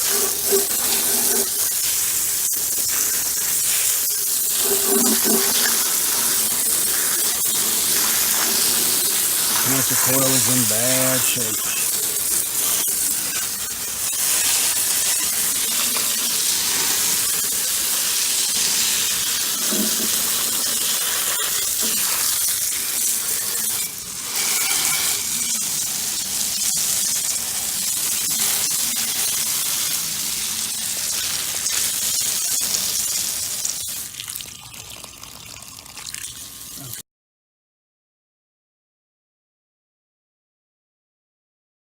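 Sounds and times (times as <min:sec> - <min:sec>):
water spraying from a hose: 0:00.0 - 0:34.5.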